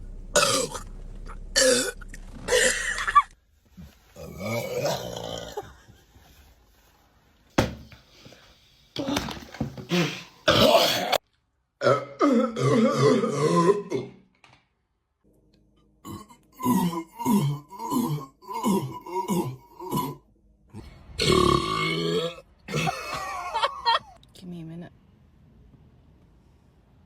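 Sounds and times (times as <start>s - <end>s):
person belching: 0.4s - 0.9s, 1.6s - 3.3s, 4.2s - 5.7s, 10.0s - 11.2s, 11.8s - 14.2s, 16.0s - 20.2s, 20.8s - 23.0s.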